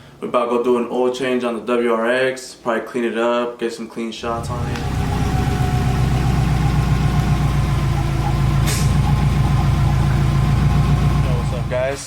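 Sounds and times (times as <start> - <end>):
car engine running steadily: 4.3 - 12.0
brief hiss: 8.6 - 8.9.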